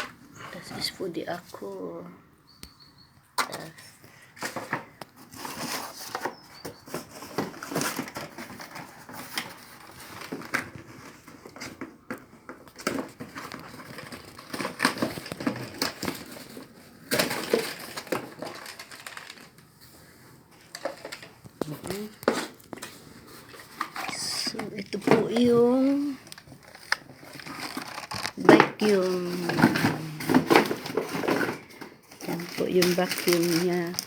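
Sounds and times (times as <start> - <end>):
packing material rustling: 4.4 - 34.0
plastic parts clicking: 23.8 - 34.0.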